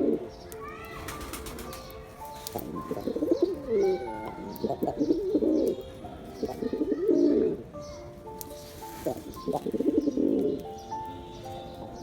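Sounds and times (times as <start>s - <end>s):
pigeon cooing: 0.0s - 0.2s, 2.5s - 5.8s, 6.4s - 7.6s, 8.9s - 10.6s.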